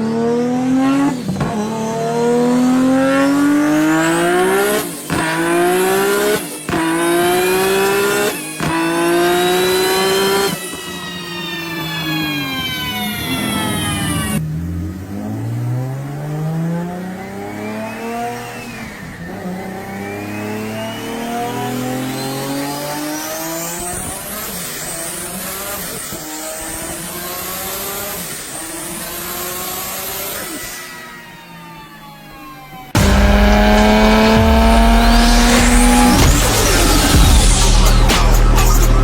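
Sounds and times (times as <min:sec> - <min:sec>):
car engine revving under load: 0:00.0 - 0:30.7, 0:33.0 - 0:39.0
high whine: 0:33.0 - 0:39.0.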